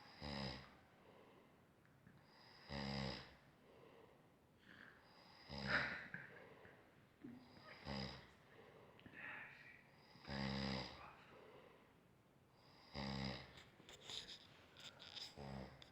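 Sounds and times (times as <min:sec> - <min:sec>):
buzzing snores: 0:00.0 - 0:00.8, 0:02.3 - 0:03.4, 0:05.0 - 0:06.2, 0:07.4 - 0:08.4, 0:10.0 - 0:11.2, 0:12.6 - 0:15.9
quiet breaths: 0:00.0 - 0:15.9.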